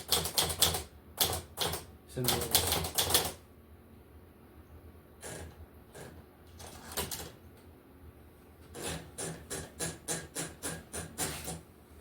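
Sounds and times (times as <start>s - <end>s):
typewriter keys striking: 0.0s - 3.4s.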